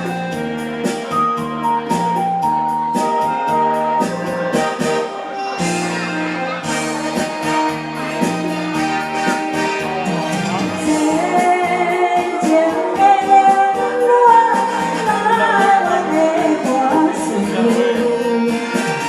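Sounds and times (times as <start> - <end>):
karaoke backing track with drums: 0.0 - 19.0
woman singing a ballad: 10.4 - 19.0.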